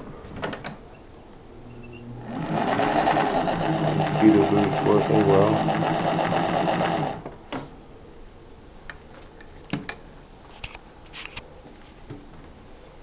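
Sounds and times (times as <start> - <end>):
sewing machine motor running: 2.2 - 7.2.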